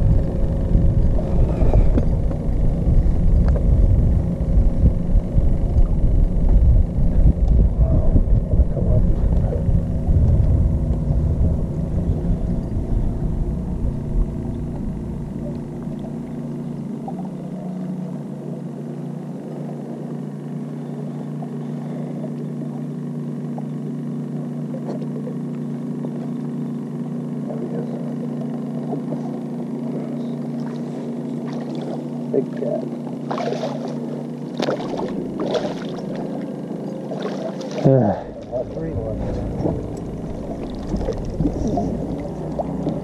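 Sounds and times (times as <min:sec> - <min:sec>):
wind rumble on microphone: 0:00.0 - 0:16.2, 0:38.4 - 0:43.0
boat motor humming: 0:00.0 - 0:43.0.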